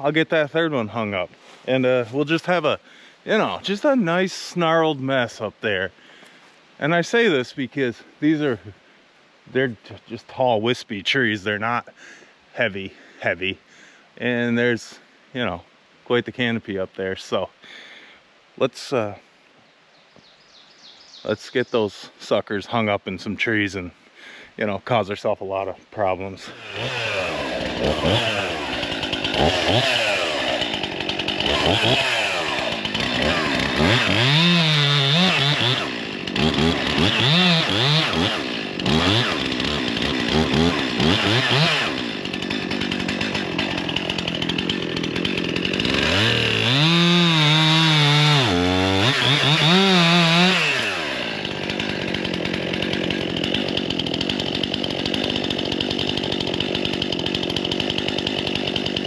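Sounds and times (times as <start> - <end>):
chainsaw revving and cutting: 26.4 - 59.0.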